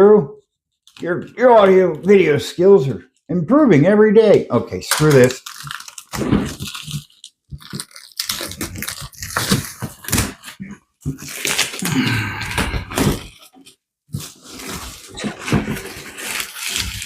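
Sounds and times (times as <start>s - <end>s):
plastic packaging crinkling and tearing: 0.8s - 2.3s, 4.8s - 17.0s.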